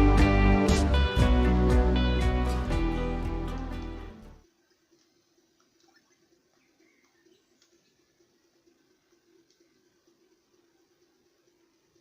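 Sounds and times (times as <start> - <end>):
instrumental music with guitar: 0.0 - 4.4.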